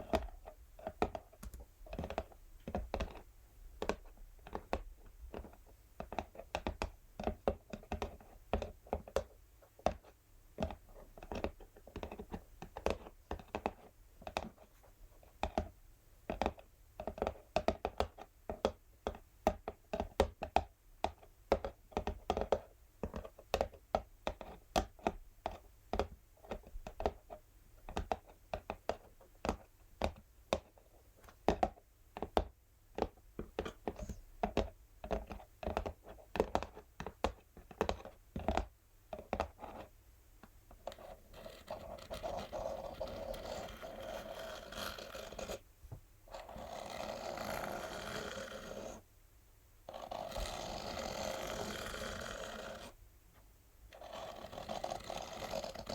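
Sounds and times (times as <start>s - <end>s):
fingernails tapping on cardboard: 0.1s - 3.2s, 3.8s - 14.6s, 15.4s - 39.9s
fingernails scratching cardboard: 40.9s - 45.6s, 46.3s - 49.0s, 49.9s - 53.0s, 54.0s - 55.9s.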